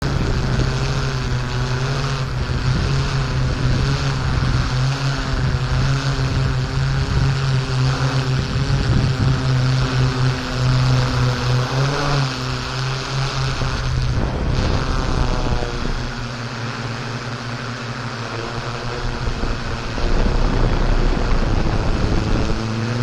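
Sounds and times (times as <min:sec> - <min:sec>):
off-road vehicle engine running: 0:00.0 - 0:23.0
road rumble: 0:00.0 - 0:23.0
wind noise: 0:00.0 - 0:23.0.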